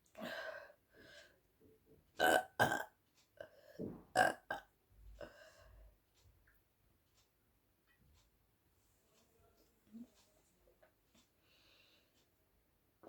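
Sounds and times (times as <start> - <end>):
woman burping: 2.2 - 2.9, 4.1 - 4.7.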